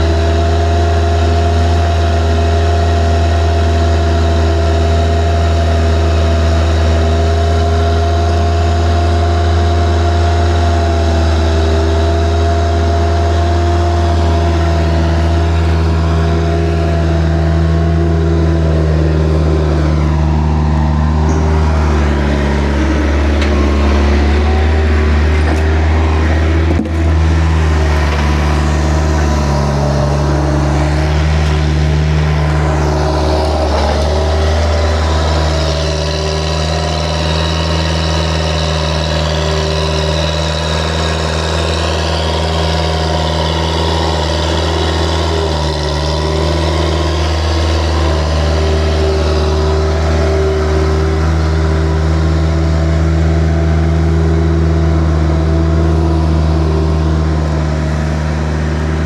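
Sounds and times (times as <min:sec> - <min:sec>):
vehicle engine running: 0:00.0 - 0:59.0.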